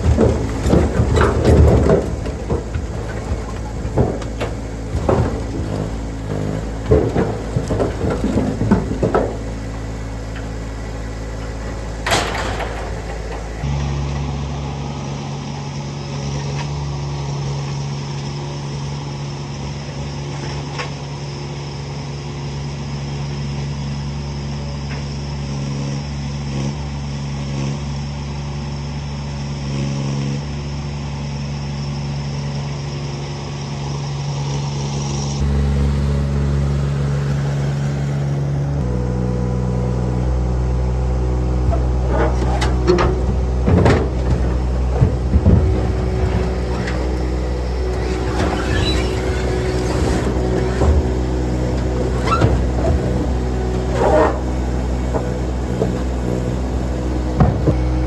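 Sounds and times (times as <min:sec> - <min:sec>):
vehicle engine running: 0:00.0 - 0:58.0.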